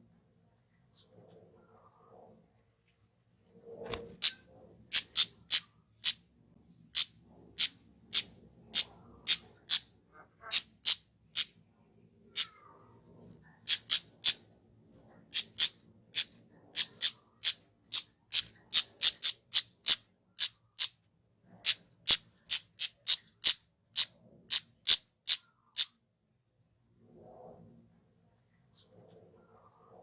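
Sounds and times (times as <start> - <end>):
bird calling high sharp notes: 5.0 - 6.2, 13.7 - 14.4, 15.4 - 17.6, 18.4 - 20.9, 21.7 - 25.9.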